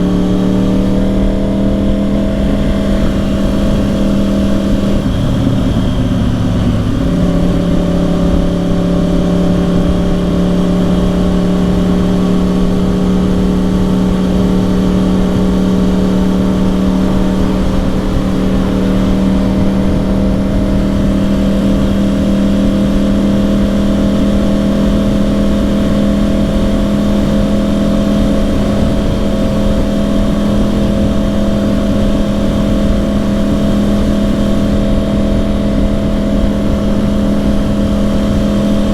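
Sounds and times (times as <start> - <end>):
motorcycle engine running: 0.0 - 38.9
wind and road rumble: 0.0 - 38.9.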